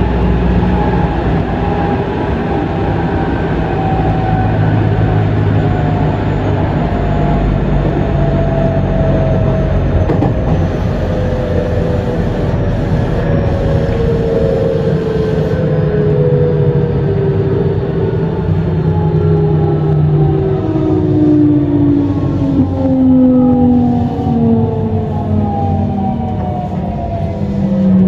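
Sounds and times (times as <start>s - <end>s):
train running noise: 0.0s - 16.1s
electric train motor whining: 6.0s - 15.9s.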